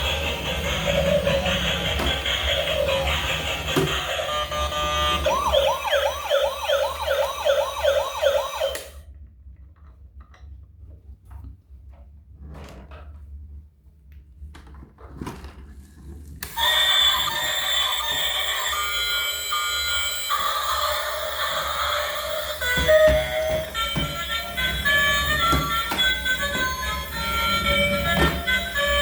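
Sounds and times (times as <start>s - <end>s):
electronic toy tones: 0.0s - 9.0s, 16.5s - 29.0s
toy siren wailing: 0.0s - 9.0s, 16.5s - 29.0s.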